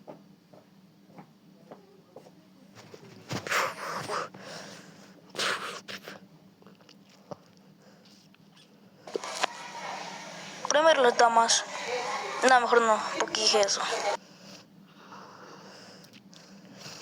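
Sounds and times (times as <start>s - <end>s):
breathy hissing bursts: 3.3s - 5.9s, 9.1s - 14.2s.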